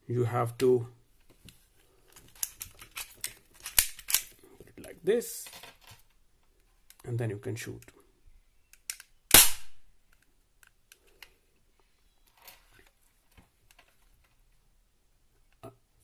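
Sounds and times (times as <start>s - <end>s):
airsoft pistol shot: 9.3s - 9.8s.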